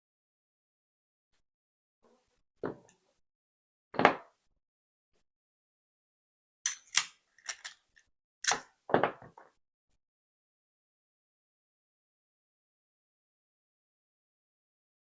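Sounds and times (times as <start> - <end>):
metal lock and tools clicking: 6.7 - 8.7.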